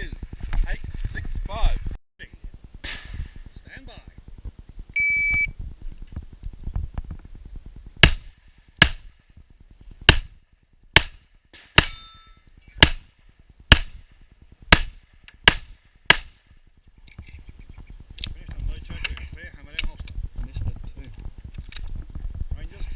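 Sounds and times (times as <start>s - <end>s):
pistol shots: 8.0s - 9.1s, 11.0s - 12.0s, 12.8s - 13.1s, 13.7s - 14.0s, 14.7s - 16.4s.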